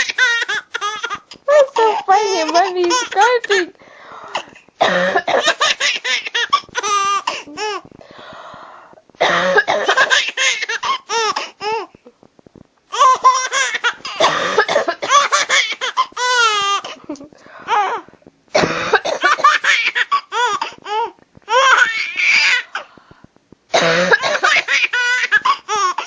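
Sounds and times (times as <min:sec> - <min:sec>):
baby laughing hysterically: 0:00.0 - 0:03.7, 0:05.2 - 0:07.8, 0:09.7 - 0:11.9, 0:12.9 - 0:17.0, 0:18.9 - 0:22.8, 0:24.1 - 0:26.0
woman coughing: 0:02.3 - 0:03.7, 0:14.2 - 0:15.3, 0:18.6 - 0:19.2, 0:23.7 - 0:24.5.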